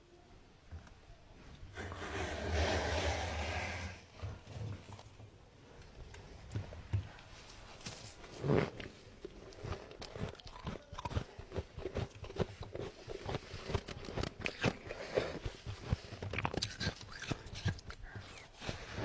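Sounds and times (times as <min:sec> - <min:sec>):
frost being chewed crunching: 0:08.4 - 0:19.0.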